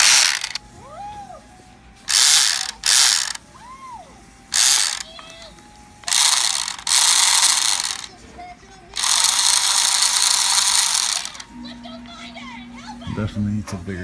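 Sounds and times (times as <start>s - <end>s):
toy car motor grinding whir: 0.0s - 0.6s, 2.1s - 3.4s, 4.5s - 5.4s, 6.0s - 8.2s, 8.9s - 11.5s.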